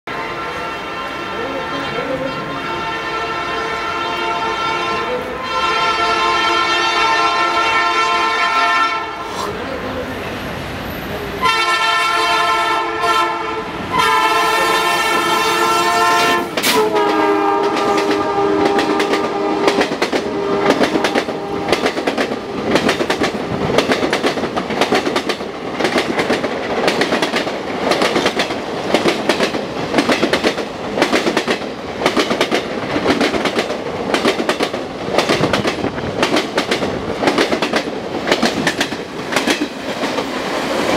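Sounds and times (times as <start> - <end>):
diesel locomotive horn blasts: 0.1 - 9.4, 11.4 - 22.6
train wheels clattering over rail joints: 16.5 - 40.9.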